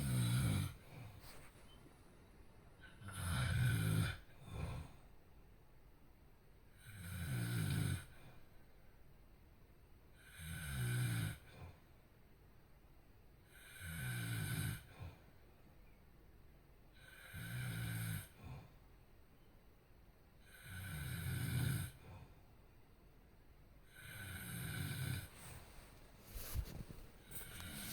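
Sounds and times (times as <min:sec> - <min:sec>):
person snoring: 0:00.0 - 0:00.8, 0:23.9 - 0:25.6.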